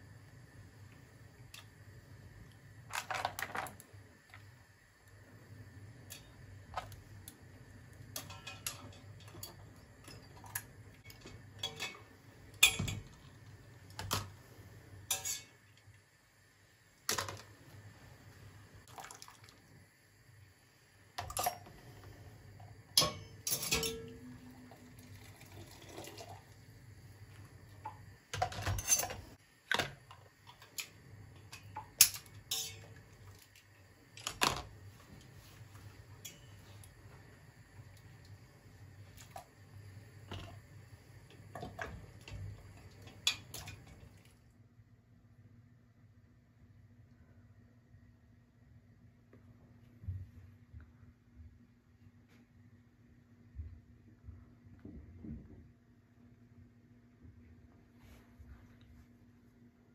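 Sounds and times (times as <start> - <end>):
dishes and utensils clinking: 8.1 - 13.2, 15.1 - 15.6, 23.0 - 24.4, 28.4 - 29.9, 31.5 - 33.0.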